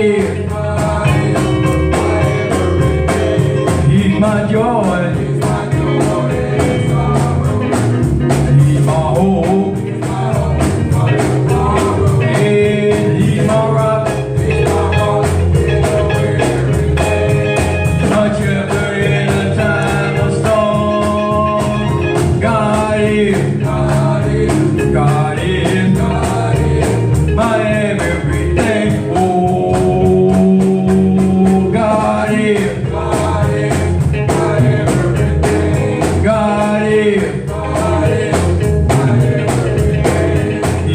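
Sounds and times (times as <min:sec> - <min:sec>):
band playing: 0:00.0 - 0:40.9
person singing gospel: 0:00.0 - 0:40.9
steady drum beat: 0:00.0 - 0:40.9.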